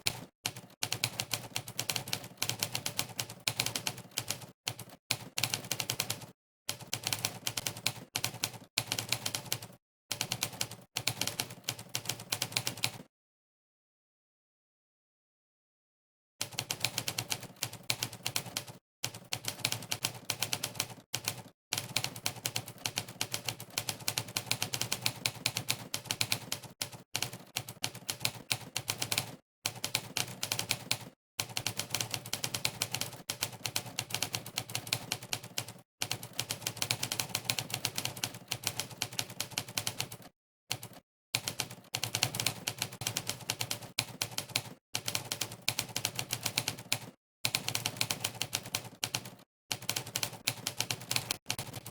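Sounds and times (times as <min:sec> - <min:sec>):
typewriter keystroke clacks: 0:16.4 - 0:51.9.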